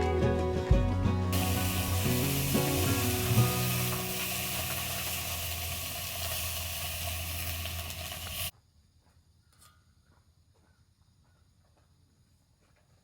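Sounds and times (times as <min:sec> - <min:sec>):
sizzling hiss: 0:01.3 - 0:08.5.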